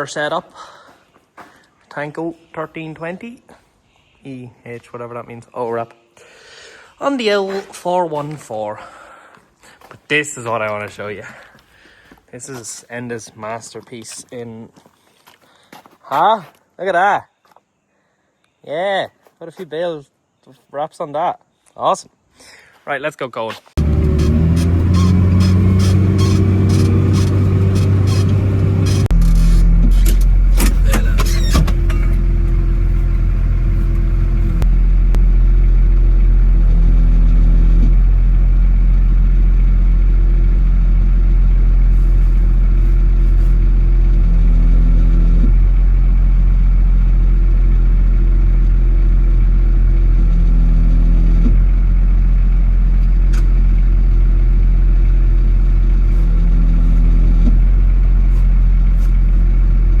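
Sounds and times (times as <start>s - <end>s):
tractor engine running: 23.8s - 60.0s.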